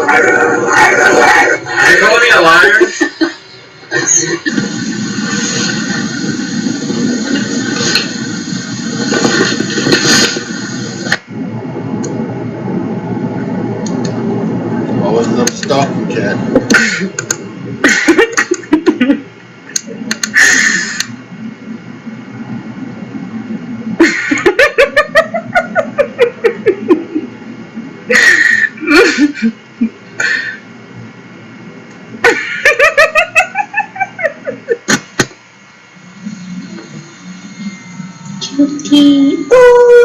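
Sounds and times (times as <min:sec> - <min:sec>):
person laughing hard: 0:17.8 - 0:19.3, 0:24.0 - 0:27.3, 0:28.1 - 0:30.0, 0:32.2 - 0:35.0.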